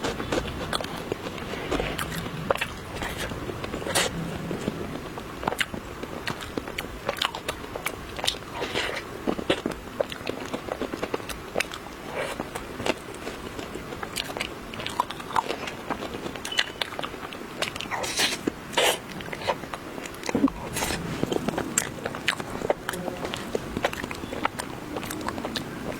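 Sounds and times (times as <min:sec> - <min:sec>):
chewing chocolate: 0:08.2 - 0:18.9, 0:20.4 - 0:25.9
crunchy crackles: 0:20.4 - 0:25.9.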